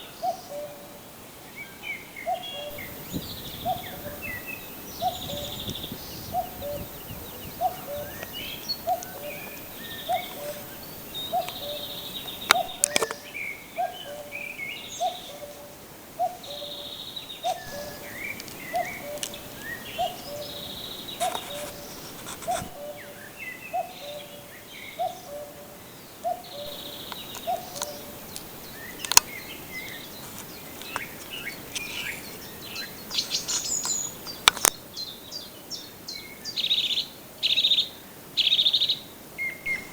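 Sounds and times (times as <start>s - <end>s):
bird chirps and trills: 2.2s - 15.6s, 16.2s - 25.5s, 26.2s - 35.9s
sharp clicks: 7.7s - 13.2s, 26.7s - 32.3s, 33.1s - 34.8s.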